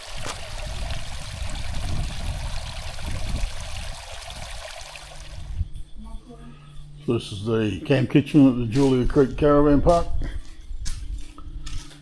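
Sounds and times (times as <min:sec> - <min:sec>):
water running and trickling: 0:00.0 - 0:05.7.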